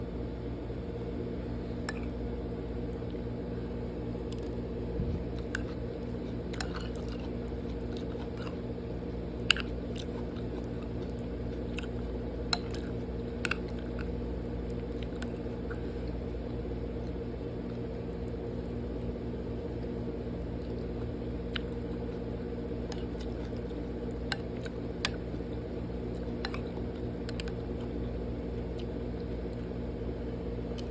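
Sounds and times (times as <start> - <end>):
steady low hum: 0.0 - 30.9
person chewing and biting: 4.2 - 16.2, 20.5 - 27.9.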